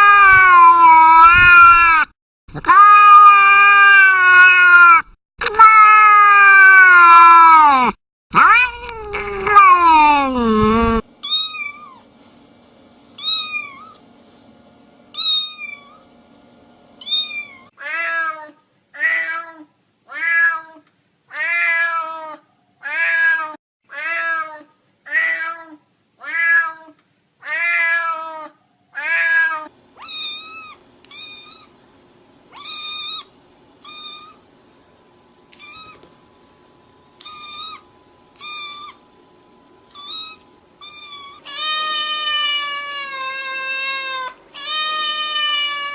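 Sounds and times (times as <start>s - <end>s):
lower-pitched cat meows: 0.0s - 11.9s, 17.0s - 31.7s, 35.6s - 36.0s
high-pitched cat meows: 0.0s - 12.0s, 13.2s - 14.0s, 17.0s - 31.7s, 32.5s - 34.4s, 35.5s - 36.1s, 37.2s - 37.8s, 38.4s - 39.0s, 39.9s - 45.9s.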